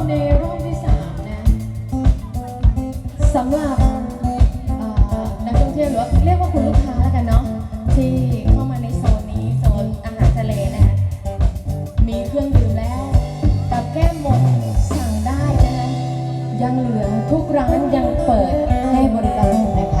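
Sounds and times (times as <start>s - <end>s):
bass line: 0.0s - 20.0s
drum beats: 0.0s - 20.0s
plucked string lead melody: 10.8s - 20.0s.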